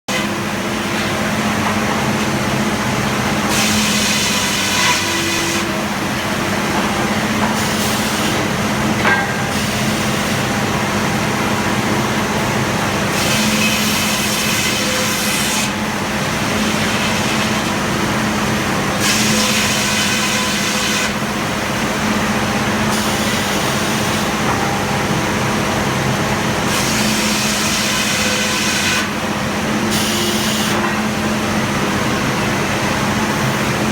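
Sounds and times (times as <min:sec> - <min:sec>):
sawmill machine hum: 0:00.1 - 0:33.9
saw cutting wood: 0:03.5 - 0:05.8, 0:13.0 - 0:18.1, 0:18.8 - 0:21.2, 0:26.6 - 0:29.2.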